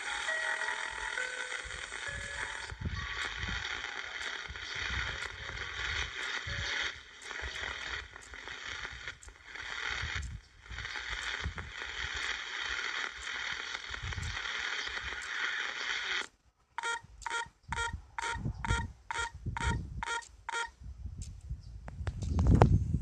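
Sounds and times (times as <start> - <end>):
short electronic beeps: 0.0 - 11.3, 12.6 - 20.7
radio static hiss: 0.0 - 17.4
faint steady tones: 0.0 - 20.8.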